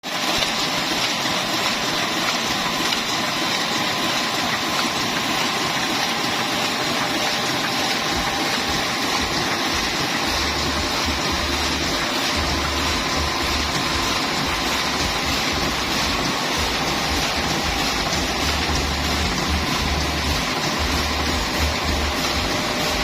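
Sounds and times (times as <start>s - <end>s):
printing press running: 0.0s - 23.0s.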